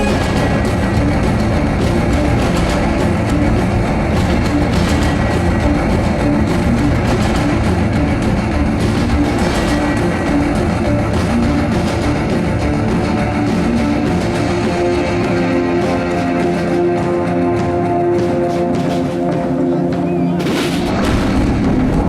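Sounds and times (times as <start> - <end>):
drummers beating fast pattern: 0.0 - 22.0
loud rock music with electric guitar: 0.0 - 22.0.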